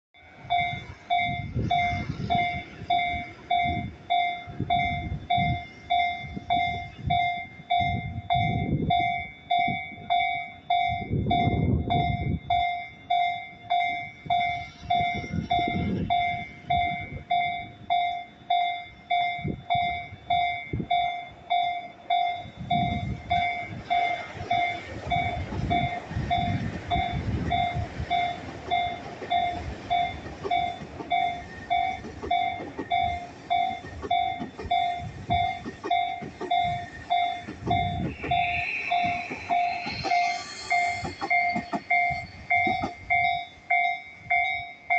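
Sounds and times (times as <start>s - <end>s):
level-crossing bell ringing: 0.2s - 44.9s
train wheels clattering over joints: 23.9s - 43.5s.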